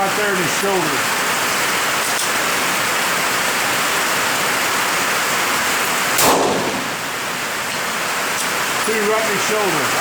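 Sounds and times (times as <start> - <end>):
rain drumming on a tin roof: 0.0 - 10.0
rifle shot: 6.2 - 7.0.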